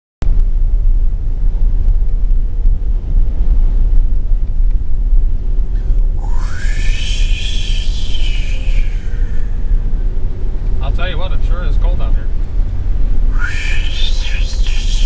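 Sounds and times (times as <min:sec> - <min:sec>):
vehicle low rumble: 0:00.2 - 0:15.0
rising pitched tone: 0:06.2 - 0:10.0, 0:13.3 - 0:15.0.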